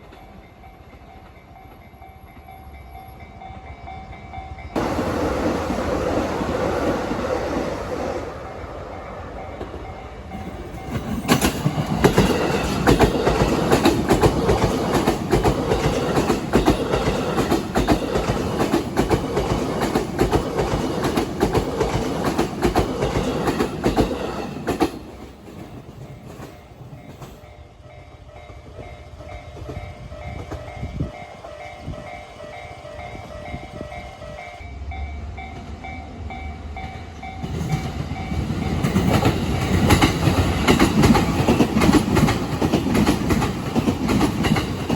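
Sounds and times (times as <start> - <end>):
train wheels clacking: 9.4 - 34.5, 35.4 - 44.9.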